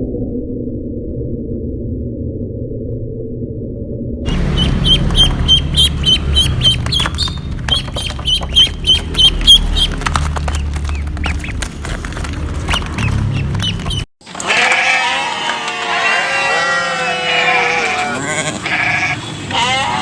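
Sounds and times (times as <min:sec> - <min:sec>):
ducks quacking: 0:04.3 - 0:11.7, 0:12.6 - 0:20.0
ducks peeping: 0:04.3 - 0:20.0.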